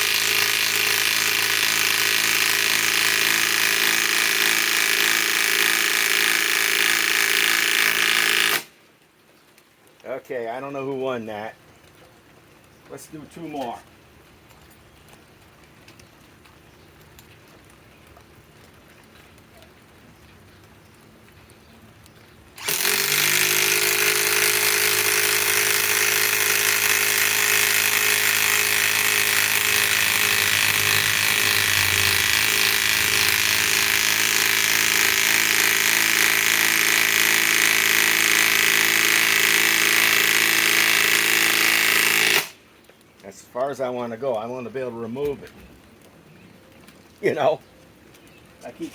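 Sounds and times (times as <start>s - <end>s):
impact wrench hammering into wood: 0.0s - 8.7s, 22.6s - 42.6s.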